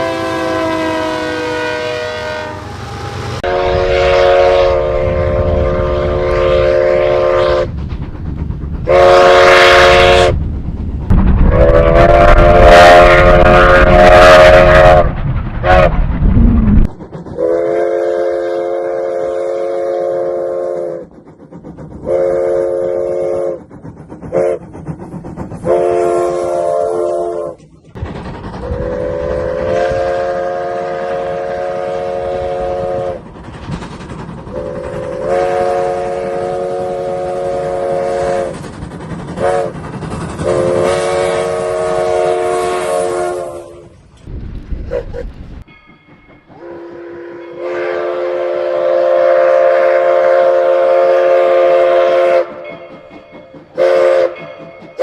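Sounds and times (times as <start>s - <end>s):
locomotive chime horn: 0.0s - 7.7s, 46.5s - 53.0s, 53.8s - 55.0s
rumble of moving train: 0.0s - 55.0s.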